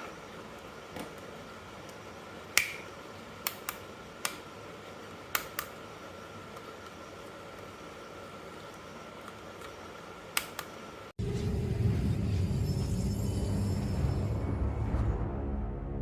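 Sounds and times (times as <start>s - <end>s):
sharp clicks and taps: 1.9s - 4.5s, 5.3s - 5.8s.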